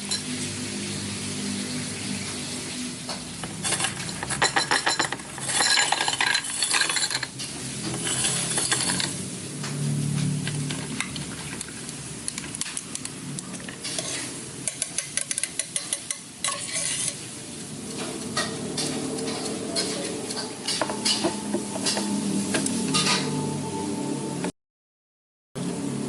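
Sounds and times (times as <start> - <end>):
utensil clinking against container: 3.5 - 9.2.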